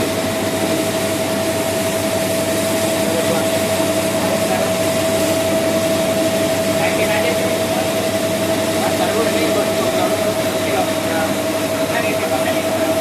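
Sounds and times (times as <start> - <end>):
constant machine whine: 0.0 - 13.0
rice milling machine running: 0.0 - 13.0.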